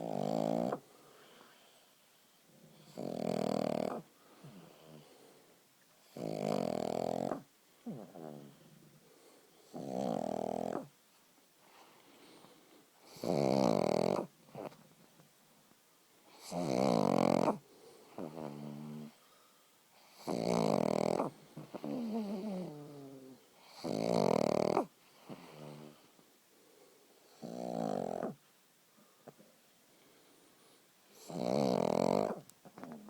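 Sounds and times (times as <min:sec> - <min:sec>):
dog snoring: 0:00.0 - 0:01.6, 0:02.5 - 0:05.2, 0:06.0 - 0:09.0, 0:09.6 - 0:10.9, 0:13.0 - 0:14.9, 0:16.3 - 0:19.2, 0:20.0 - 0:26.1, 0:27.3 - 0:28.4, 0:31.1 - 0:33.0.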